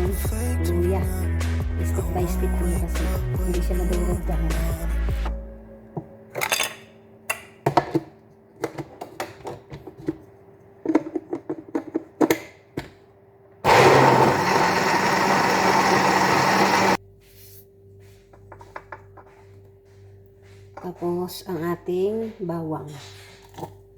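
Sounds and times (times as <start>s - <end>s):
electric blender grinding: 13.6s - 17.0s.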